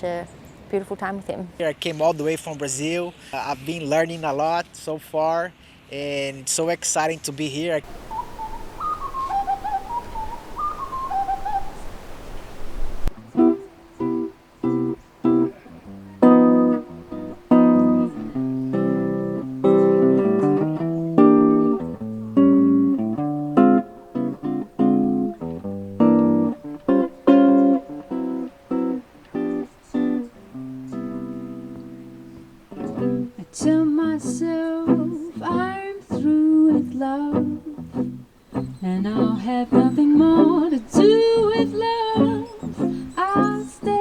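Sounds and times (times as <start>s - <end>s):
steady hiss: 1.6s - 44.0s
acoustic guitar playing: 7.9s - 11.8s, 12.6s - 44.0s
bird singing whistled notes: 7.9s - 15.5s, 16.2s - 21.9s, 26.0s - 33.3s, 37.9s - 44.0s.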